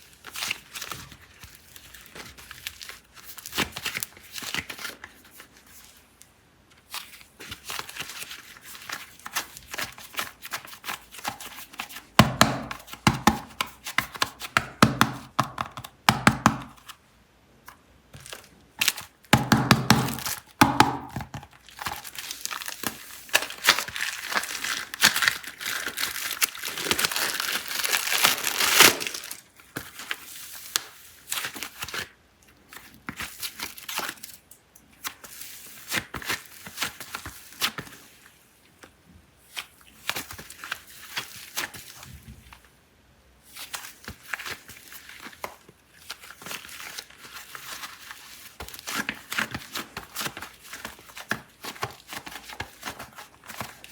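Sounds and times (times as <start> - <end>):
plastic packaging crinkling: 0.0 - 5.5, 18.1 - 32.1, 43.7 - 53.9.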